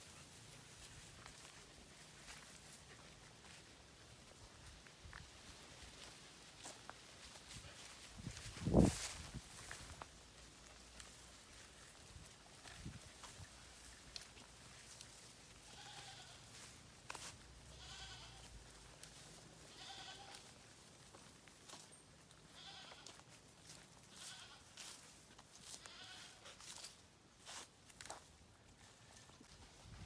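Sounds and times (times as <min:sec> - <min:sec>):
farm animals bleating: 0:15.6 - 0:16.7, 0:17.6 - 0:18.6, 0:19.6 - 0:20.6, 0:22.3 - 0:23.3, 0:24.0 - 0:24.9, 0:25.5 - 0:26.6.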